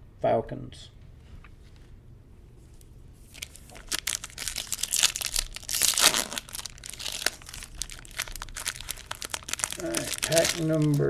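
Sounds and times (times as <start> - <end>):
foil wrapper tearing and crinkling: 3.3 - 11.0.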